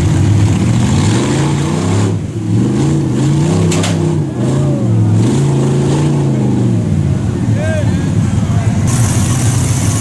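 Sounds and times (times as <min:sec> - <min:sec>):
engine revving: 0:00.0 - 0:07.3.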